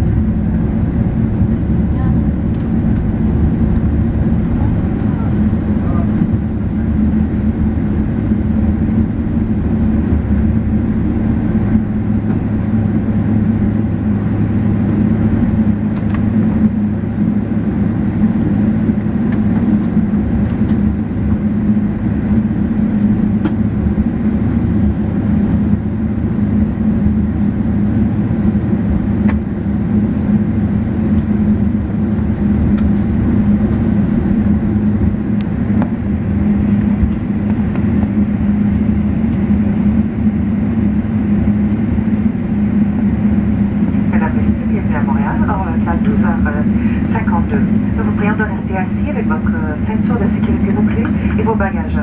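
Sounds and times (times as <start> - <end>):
engines and wheels rumbling: 0.0 - 52.0.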